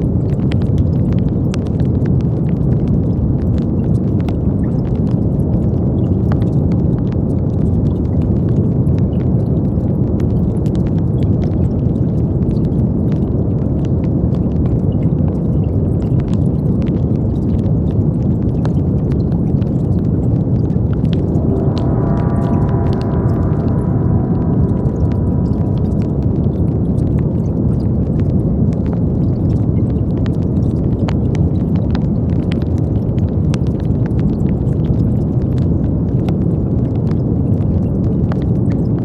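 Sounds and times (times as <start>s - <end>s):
brown noise: 18.1s - 31.0s.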